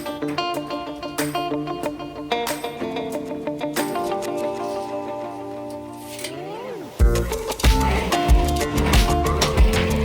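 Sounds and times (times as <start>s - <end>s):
synth music with steady beat: 6.7s - 10.0s.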